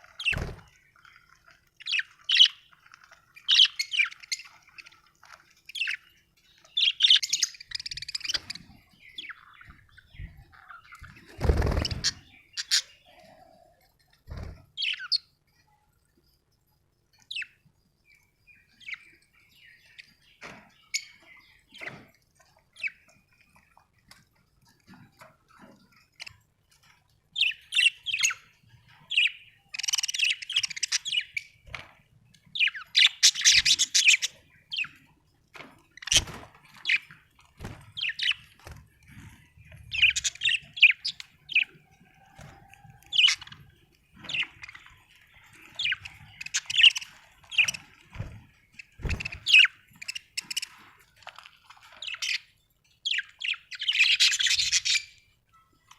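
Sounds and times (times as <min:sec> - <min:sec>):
budgerigars chirping and chattering: 0:00.1 - 0:13.5, 0:14.8 - 0:15.3, 0:27.4 - 0:31.7, 0:32.5 - 0:35.1, 0:37.9 - 0:42.3, 0:43.1 - 0:50.8, 0:51.9 - 0:55.2.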